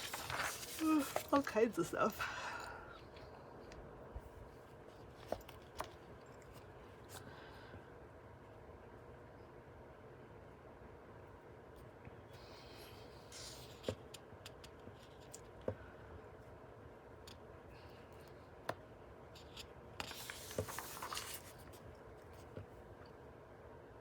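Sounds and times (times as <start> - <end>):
book pages swishing: 0.0 - 1.4, 20.0 - 21.8.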